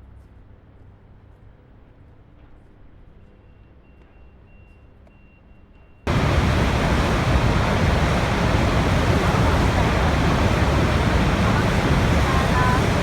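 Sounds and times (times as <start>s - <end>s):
faint low hum: 6.1s - 13.0s
waterfall rushing: 6.1s - 13.0s.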